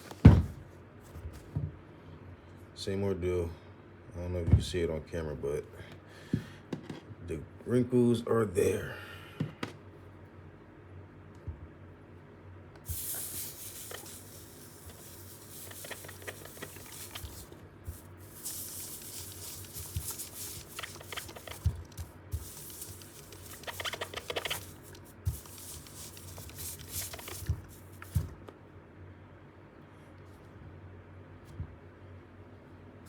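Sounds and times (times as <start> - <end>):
clothes iron hissing: 12.9 - 28.4.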